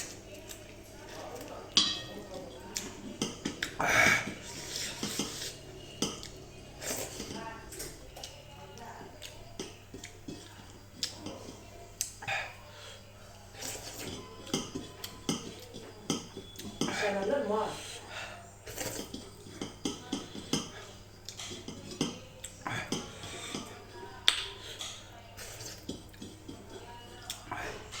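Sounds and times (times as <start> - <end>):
utensils clicking against bowl: 18.6 - 28.0.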